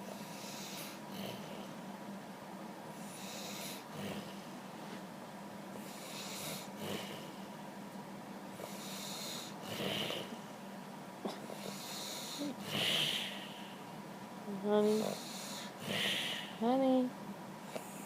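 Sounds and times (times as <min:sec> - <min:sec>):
steady low hum: 0:00.0 - 0:18.0
man snoring: 0:08.6 - 0:10.4, 0:11.6 - 0:13.6.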